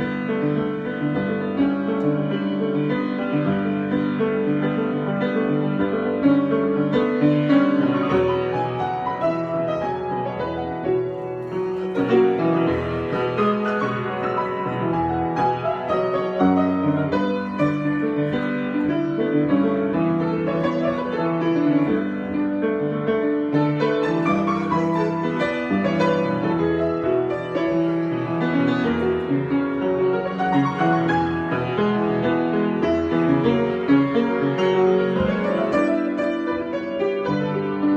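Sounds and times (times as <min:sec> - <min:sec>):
solo piano improvisation: 0:00.0 - 0:37.9.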